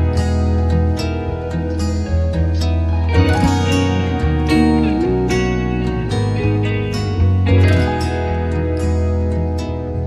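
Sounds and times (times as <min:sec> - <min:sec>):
plucked harp-like strings: 0:00.0 - 0:10.0
steady bass: 0:00.0 - 0:10.0.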